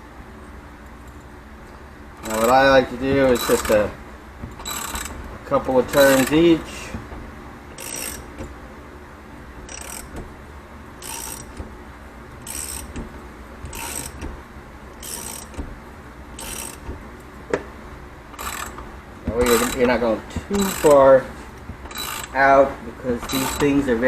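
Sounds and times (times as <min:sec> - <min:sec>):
ratchet wrench clicking: 0:02.2 - 0:02.7, 0:03.3 - 0:03.9, 0:04.6 - 0:05.2, 0:05.9 - 0:06.4, 0:07.7 - 0:08.5, 0:09.6 - 0:10.2, 0:11.0 - 0:11.7, 0:12.4 - 0:13.1, 0:13.7 - 0:14.3, 0:15.0 - 0:15.6, 0:16.4 - 0:16.9, 0:18.3 - 0:18.8, 0:19.4 - 0:21.1, 0:21.8 - 0:22.4, 0:23.2 - 0:23.9.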